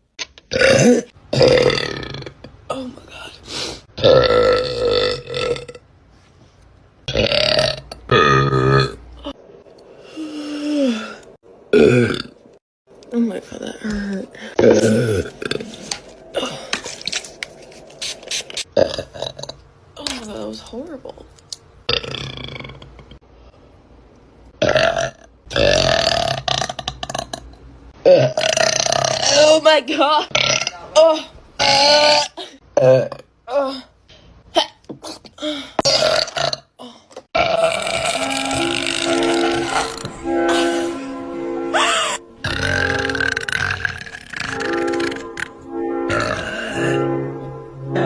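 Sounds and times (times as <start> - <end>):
woman burping: 0.5 - 3.1, 4.0 - 5.8, 7.1 - 9.3, 11.7 - 12.4, 14.6 - 15.7, 28.0 - 29.6, 30.3 - 33.8, 35.8 - 40.8, 41.8 - 45.4, 46.1 - 47.0.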